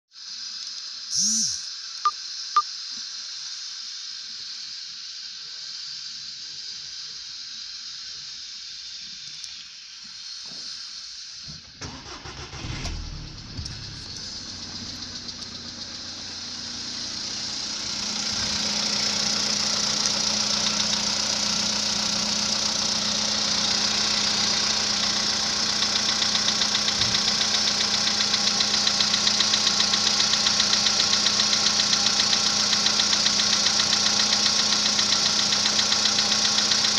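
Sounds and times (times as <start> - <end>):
car engine idling: 11.6 - 36.9
starter cranking: 11.8 - 16.3, 17.8 - 36.9
engine knocking: 11.8 - 36.9.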